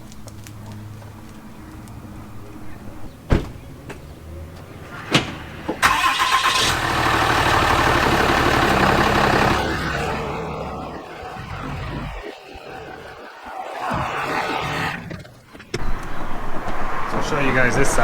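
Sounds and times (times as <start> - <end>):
diesel engine starting and running: 3.0 - 12.3.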